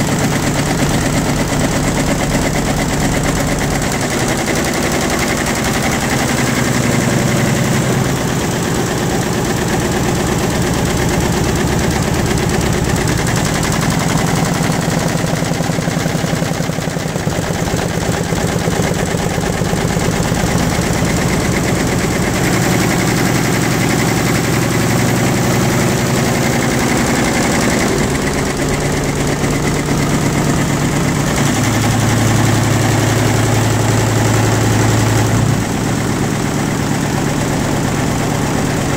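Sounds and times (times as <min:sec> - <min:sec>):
engine running steadily: 0:00.0 - 0:38.9.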